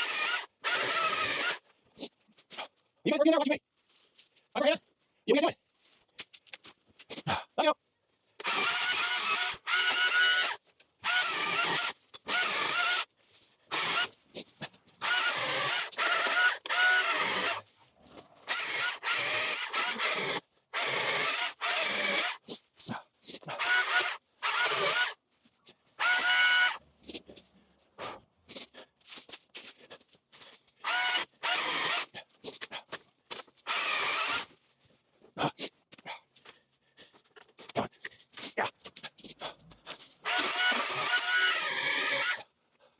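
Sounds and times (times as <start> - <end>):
electric cutting tool whining: 0.0 - 1.6, 8.4 - 13.1, 13.7 - 14.1, 15.0 - 17.6, 18.4 - 22.4, 23.6 - 25.1, 26.0 - 26.8, 30.9 - 32.0, 33.7 - 34.5, 40.3 - 42.4.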